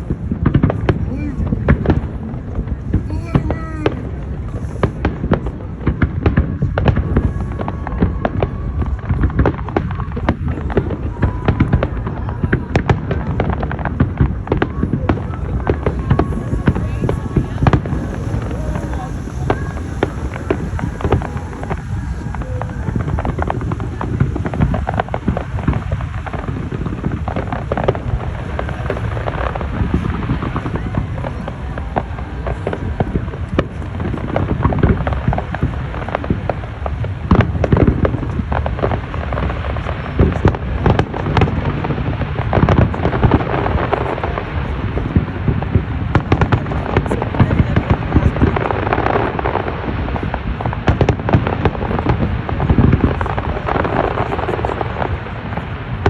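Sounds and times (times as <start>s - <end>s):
fireworks bangs and crackles: 0.0s - 56.0s
low rumble: 0.0s - 56.0s.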